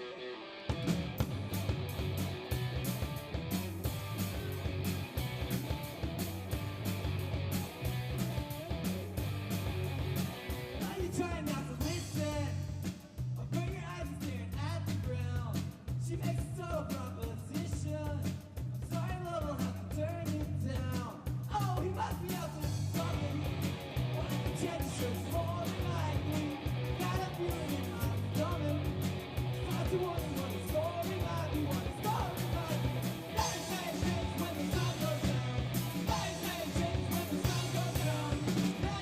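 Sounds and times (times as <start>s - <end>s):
electric guitar: 0.0s - 12.4s, 22.0s - 39.0s
bass guitar: 0.0s - 39.0s
drums with steady beat: 0.7s - 39.0s
person singing: 29.6s - 39.0s.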